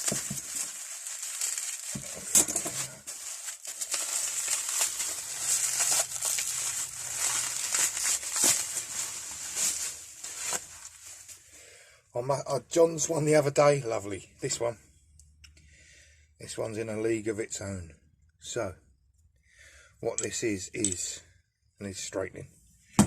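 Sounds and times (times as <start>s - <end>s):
crinkling handling noise: 0.0s - 11.6s.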